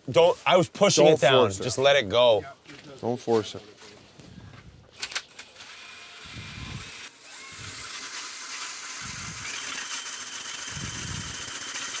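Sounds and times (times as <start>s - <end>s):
power ice auger boring: 5.4s - 12.0s.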